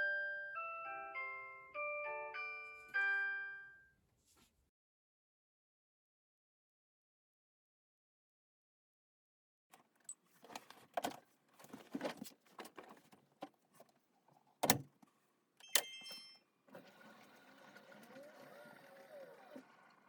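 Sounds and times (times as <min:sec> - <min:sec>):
short beep: 0:15.6 - 0:16.4
washing machine drum motor whirring: 0:16.7 - 0:20.0.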